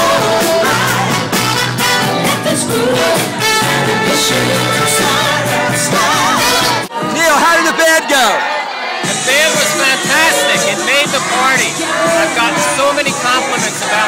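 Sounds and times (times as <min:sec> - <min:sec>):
person singing: 0:00.0 - 0:06.9
band playing upbeat music: 0:00.0 - 0:14.0.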